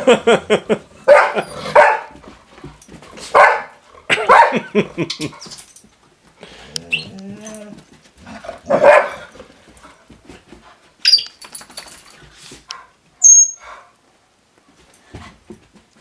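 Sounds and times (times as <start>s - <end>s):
puppies barking and growling: 0.7s - 2.3s, 3.4s - 5.1s, 6.8s - 9.4s.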